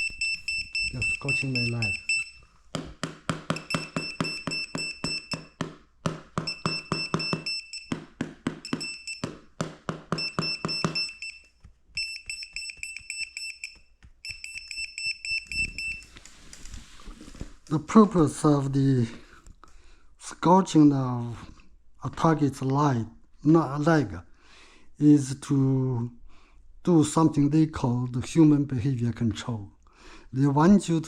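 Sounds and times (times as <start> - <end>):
rapid high-pitched beeps: 0.0 - 2.4, 3.5 - 5.6, 6.4 - 8.0, 10.1 - 11.4.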